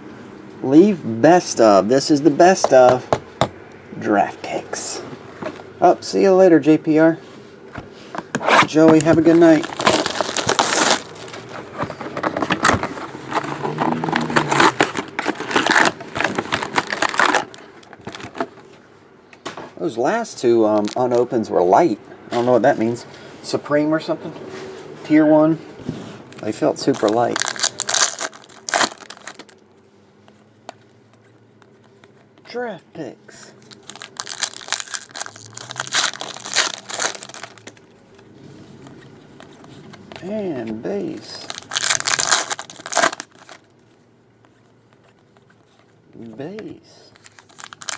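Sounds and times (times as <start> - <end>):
card wrappers rustling and crinkling: 8.3 - 18.7, 20.6 - 21.4, 26.3 - 29.6, 33.5 - 37.9, 41.1 - 43.8, 47.1 - 47.9.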